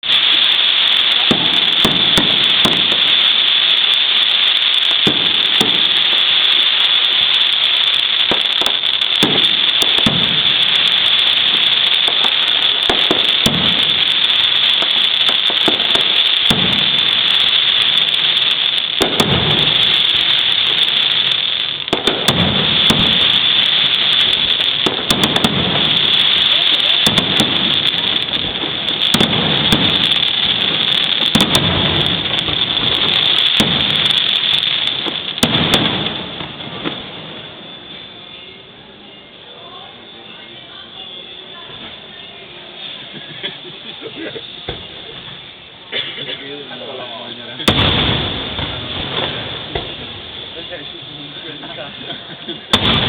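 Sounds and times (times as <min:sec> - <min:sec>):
fireworks crackle and fizz: 0:00.0 - 0:53.0
deep booms of shells bursting: 0:47.7 - 0:50.0, 0:52.8 - 0:53.0.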